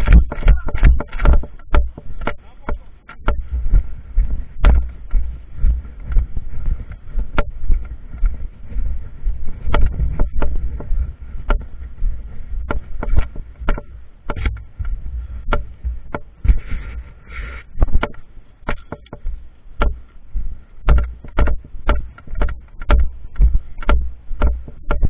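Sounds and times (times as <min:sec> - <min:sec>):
sharp knocks and clicks: 0:00.0 - 0:20.2, 0:20.8 - 0:25.0
low rumble: 0:03.0 - 0:18.6.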